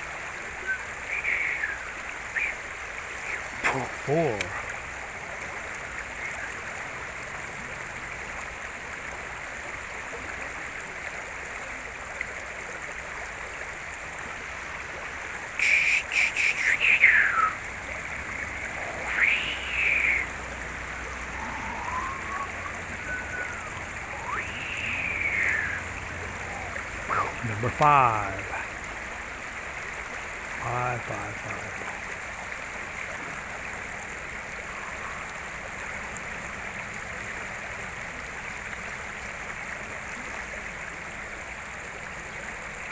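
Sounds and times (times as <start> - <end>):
river water flowing: 0.0 - 42.9
rising-and-falling calls: 0.4 - 4.5, 15.6 - 28.6.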